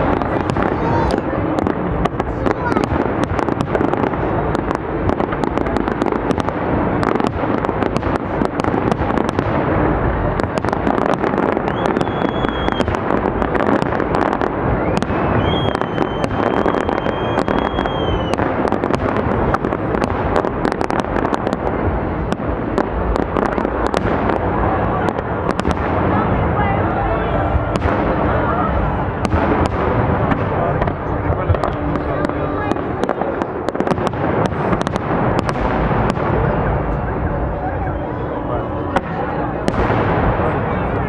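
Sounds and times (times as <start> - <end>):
high steady firework whistle: 0.0 - 26.1
fireworks crackling and banging: 0.0 - 41.0.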